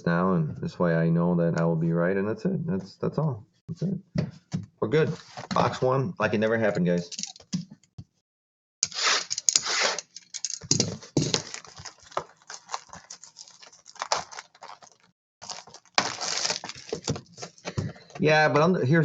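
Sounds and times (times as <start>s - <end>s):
trading cards rustling and sliding: 8.8s - 18.1s.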